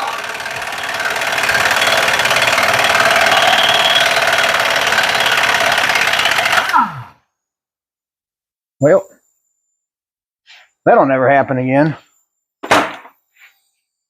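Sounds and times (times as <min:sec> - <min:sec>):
impact wrench winding down whine: 0:00.0 - 0:07.2.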